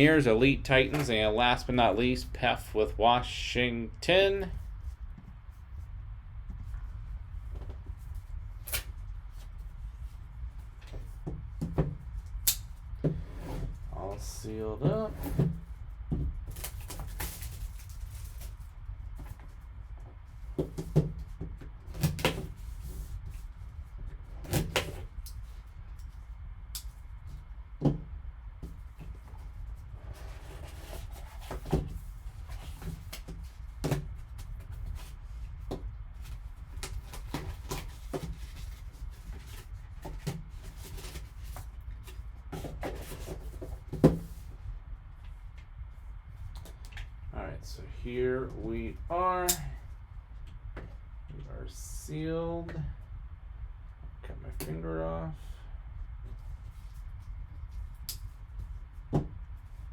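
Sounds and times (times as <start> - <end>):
low steady hum: 0.0 - 59.9
items handled on a tabletop: 28.6 - 44.6.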